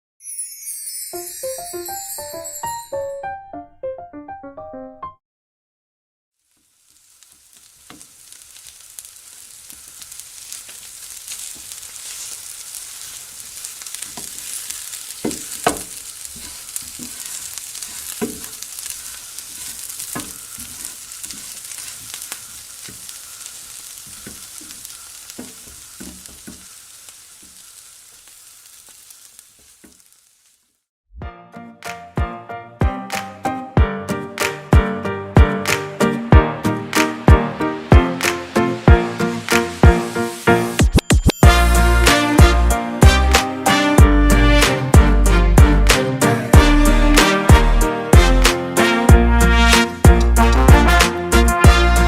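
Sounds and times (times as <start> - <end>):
stir-fry sizzling in a pan: 6.4 - 30.9, 34.4 - 52.0
utensil knocking against pan: 15.2 - 15.9.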